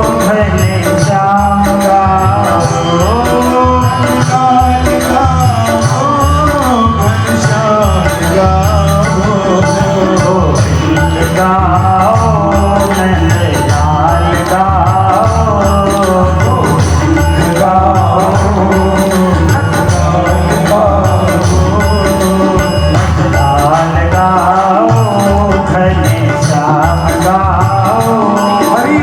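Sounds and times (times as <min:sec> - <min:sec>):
instrumental accompaniment: 0:00.0 - 0:29.0
percussion beat: 0:00.0 - 0:29.0
person singing: 0:00.0 - 0:29.0.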